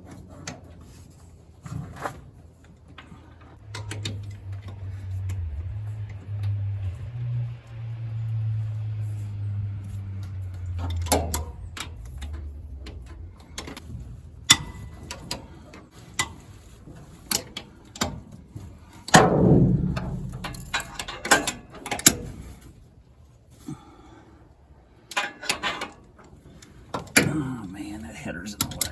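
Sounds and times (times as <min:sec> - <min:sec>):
low hum: 0:03.6 - 0:17.3, 0:19.1 - 0:24.4
loud clattering knock: 0:19.2 - 0:22.1.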